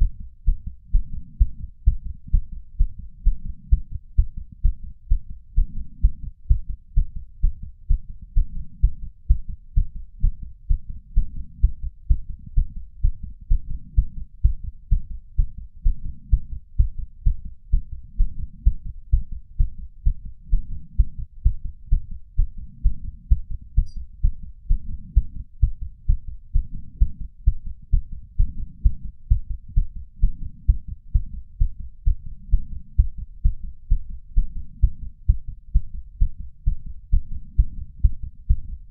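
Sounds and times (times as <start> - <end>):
fast heartbeat thumps: 0.0 - 38.9.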